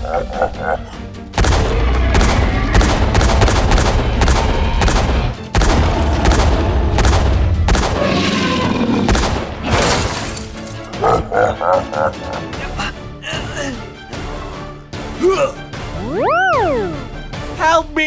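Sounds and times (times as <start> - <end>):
rapid gunshots: 1.3 - 10.1
deep rumble: 1.4 - 9.5.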